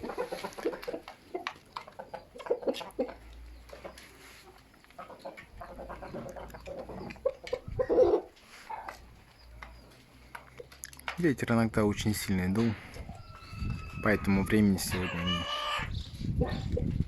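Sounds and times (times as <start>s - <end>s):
chickens clucking: 0.0s - 11.2s, 12.2s - 17.0s
wind rumbling on microphone: 7.0s - 8.2s, 12.7s - 17.0s.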